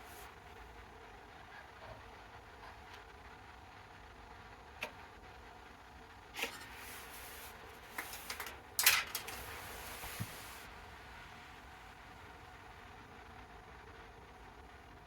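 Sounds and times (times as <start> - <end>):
metal parts clicking and knocking: 8.0 - 9.4.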